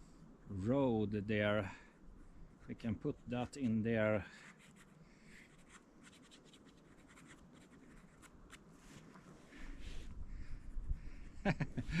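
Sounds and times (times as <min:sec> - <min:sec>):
pencil sketching on paper: 0:04.4 - 0:08.6.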